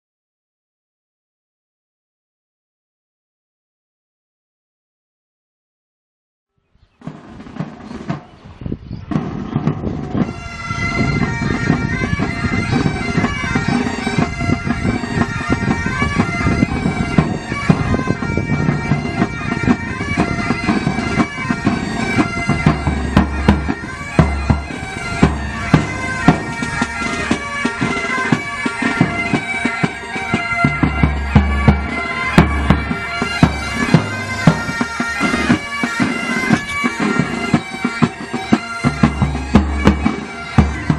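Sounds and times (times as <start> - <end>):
drum beats: 7.0 - 8.4, 9.1 - 40.9
bagpipes playing a tune: 9.9 - 40.9.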